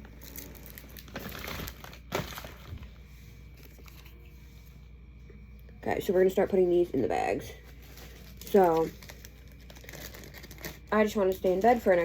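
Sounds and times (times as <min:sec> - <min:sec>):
packaging crinkling and rustling: 0:00.0 - 0:04.2, 0:07.7 - 0:12.0.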